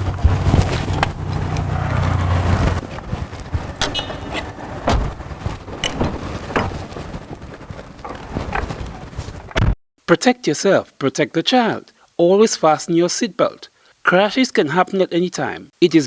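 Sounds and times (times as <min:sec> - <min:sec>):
car engine running: 0:00.0 - 0:05.0.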